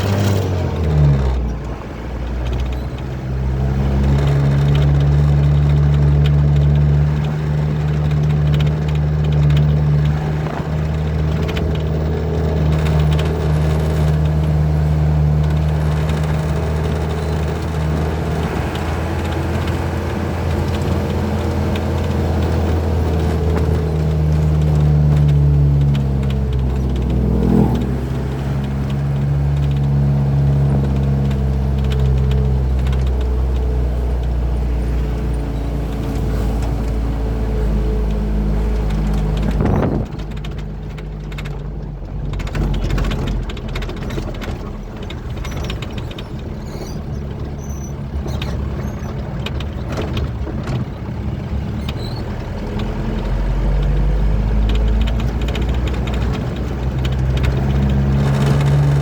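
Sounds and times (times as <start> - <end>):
truck diesel engine under load: 0.0 - 59.0.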